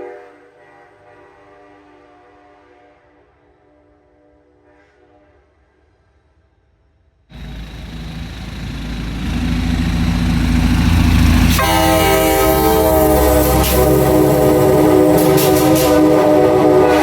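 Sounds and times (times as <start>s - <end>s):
diesel locomotive rumbling: 7.3s - 17.0s
train air horn chord: 7.3s - 17.0s.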